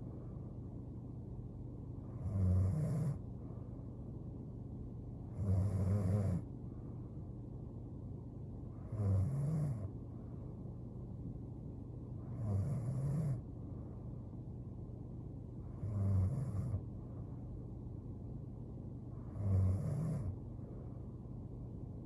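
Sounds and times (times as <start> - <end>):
steady low hum: 0.0 - 22.0
woman snoring: 2.2 - 3.2, 5.4 - 6.4, 8.9 - 9.9, 12.3 - 13.4, 15.8 - 16.8, 19.3 - 20.3.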